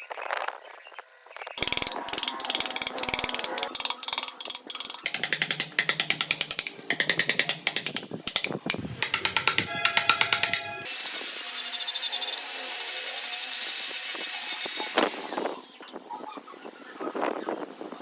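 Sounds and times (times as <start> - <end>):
ratchet-like mechanical clicking: 1.6 - 12.3.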